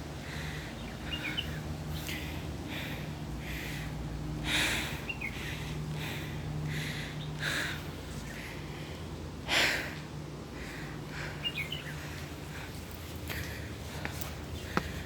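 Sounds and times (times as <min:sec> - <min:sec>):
person breathing hard: 0:00.0 - 0:15.0
bird chirping: 0:00.7 - 0:02.3, 0:05.0 - 0:05.5, 0:11.4 - 0:12.1.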